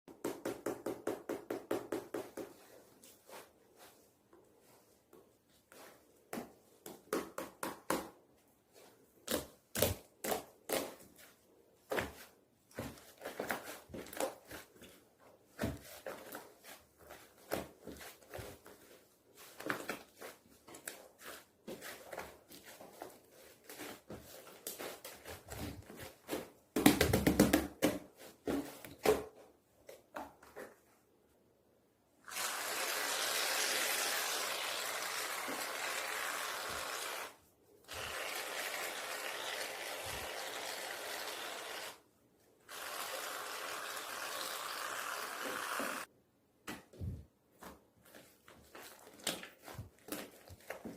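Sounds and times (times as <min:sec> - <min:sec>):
shaving foam can sputtering: 0:32.3 - 0:42.0, 0:42.7 - 0:46.1.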